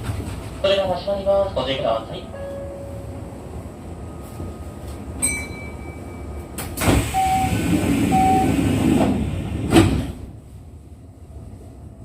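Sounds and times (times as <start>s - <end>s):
train door click: 6.5s - 10.3s
sliding doors rushing: 6.6s - 10.4s
short beeps: 7.1s - 8.6s.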